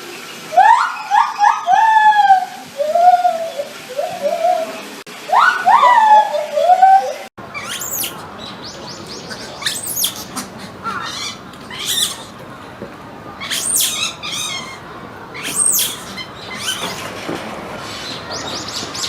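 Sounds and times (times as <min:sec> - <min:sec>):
steady background hiss: 0:00.0 - 0:19.0
monkey shrieking calls: 0:00.5 - 0:08.4, 0:09.1 - 0:12.4, 0:13.4 - 0:14.8, 0:15.4 - 0:17.1.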